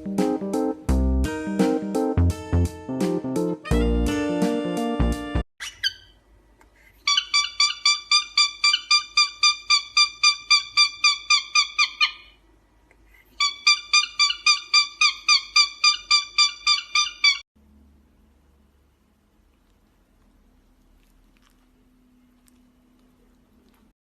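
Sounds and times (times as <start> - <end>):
small animal squeaky calls: 5.6 - 6.2, 7.0 - 12.4, 13.3 - 17.4.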